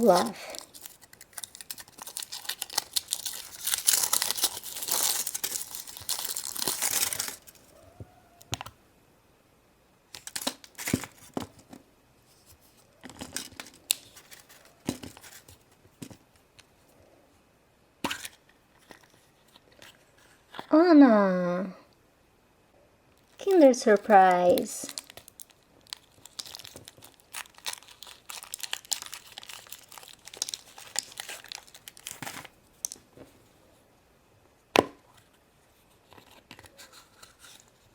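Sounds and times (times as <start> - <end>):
foil wrapper crinkling: 0.0 - 7.7, 10.1 - 11.3, 13.1 - 15.6, 23.2 - 33.0.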